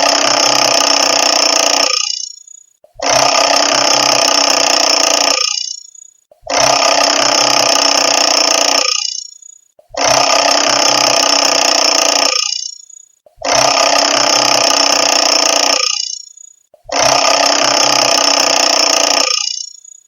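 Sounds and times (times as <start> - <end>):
mechanical alarm clock bell ringing: 1.2 - 2.7, 5.2 - 6.2, 8.0 - 9.6, 11.6 - 13.1, 15.2 - 16.6, 19.1 - 20.0.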